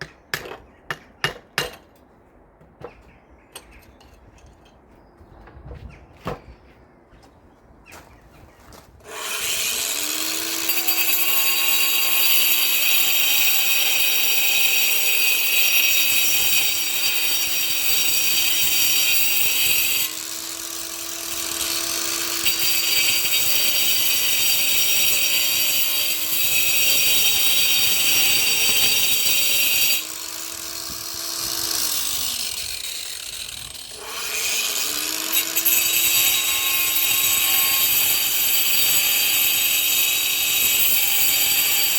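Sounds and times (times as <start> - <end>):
angle grinder grinding mortar: 9.0 - 41.9.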